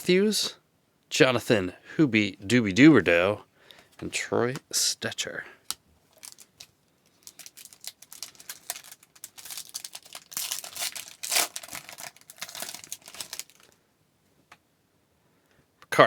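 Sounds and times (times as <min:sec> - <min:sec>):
wrapper tearing and crinkling: 0:06.1 - 0:13.8.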